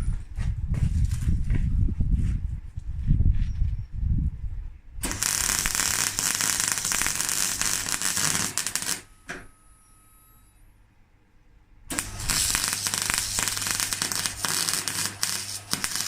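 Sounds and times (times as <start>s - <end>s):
welding crackling: 5.0s - 9.1s, 11.9s - 16.0s.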